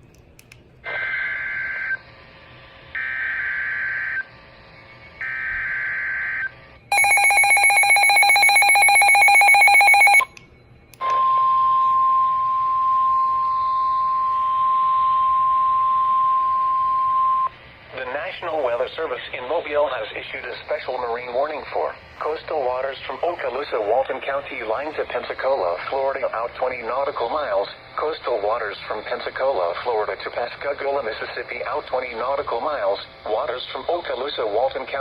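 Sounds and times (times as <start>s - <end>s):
steady warning alarm tone: 5.2s - 10.3s
rapidly pulsing electronic beeping: 6.9s - 10.3s.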